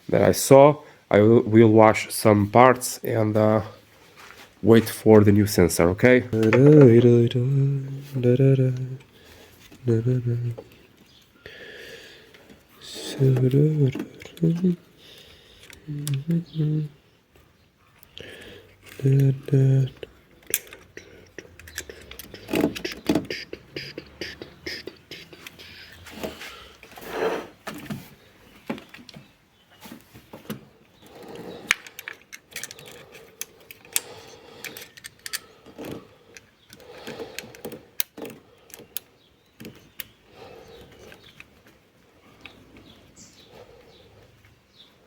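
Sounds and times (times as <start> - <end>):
metal tools clinking and rattling: 31.7 - 36.0.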